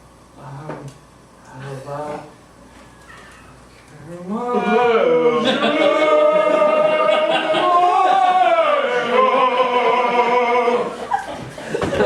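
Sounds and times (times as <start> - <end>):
man singing operatically: 4.3 - 10.9.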